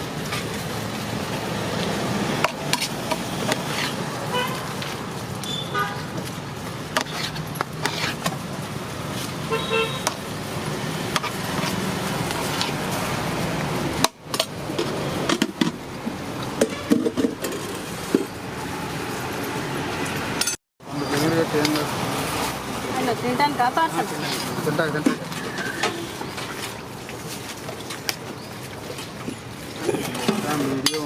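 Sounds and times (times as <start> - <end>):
roadside traffic noise: 0.0 - 31.0
vehicle horn honking: 4.3 - 4.7, 5.5 - 6.1, 9.5 - 10.1, 25.8 - 26.2.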